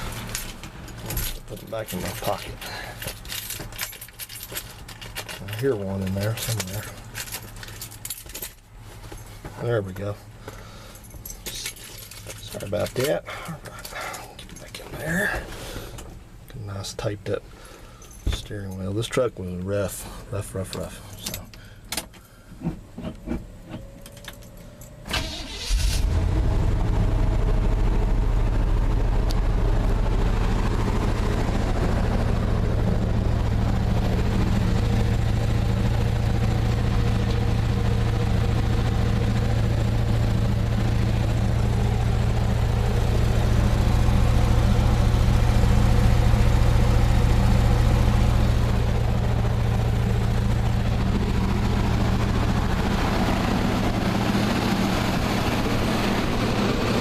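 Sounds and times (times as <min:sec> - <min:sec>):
car engine idling: 0:00.0 - 0:16.6, 0:19.8 - 0:57.0
engine cranking: 0:22.6 - 0:26.4.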